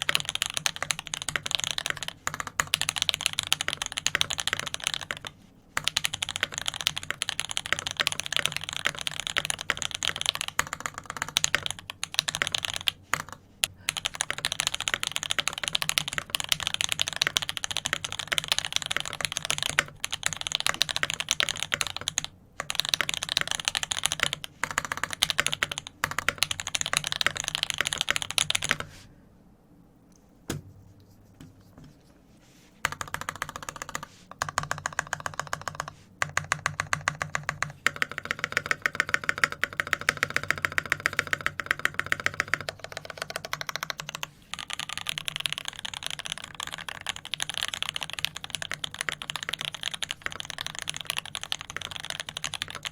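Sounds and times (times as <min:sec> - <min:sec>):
mechanical keyboard typing: 0:00.0 - 0:28.9, 0:32.8 - 0:52.9.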